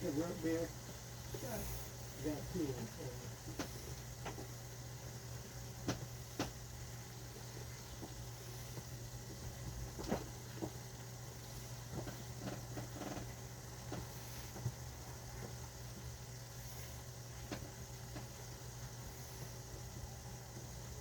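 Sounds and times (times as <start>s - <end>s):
steady low hum: 0.0s - 21.0s
knocks and clicks of kitchen items: 5.8s - 6.6s.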